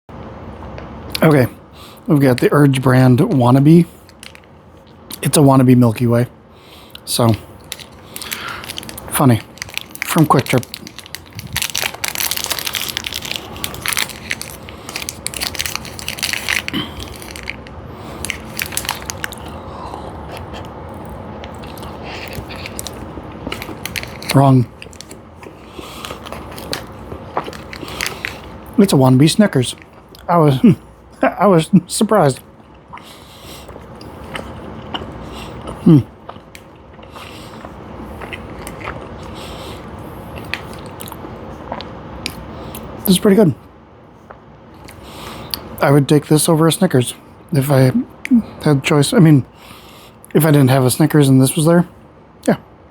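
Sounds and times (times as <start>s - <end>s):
chocolate bar crunching when chewed: 6.9s - 30.3s, 33.7s - 42.9s.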